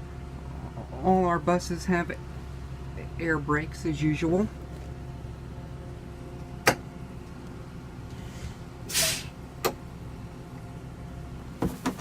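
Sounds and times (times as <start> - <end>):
compressed air hiss: 8.9 - 9.4.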